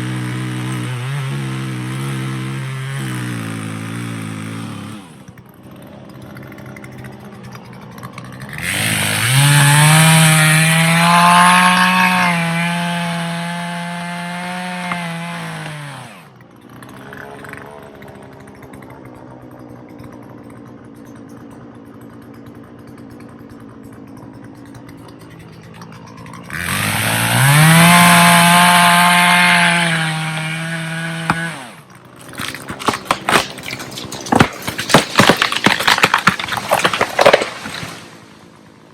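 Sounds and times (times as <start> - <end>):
chainsaw idling and cutting: 0.0 - 38.9
sharp cracks: 24.0 - 38.9.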